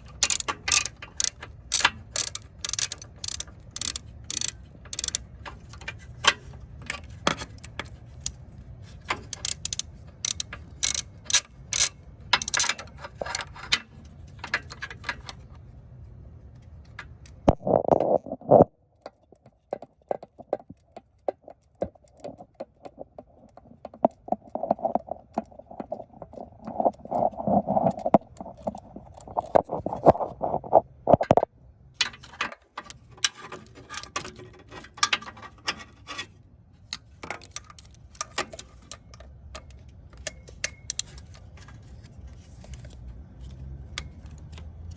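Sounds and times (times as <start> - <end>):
hand ratchet clicking: 0.0 - 5.3, 9.3 - 13.5.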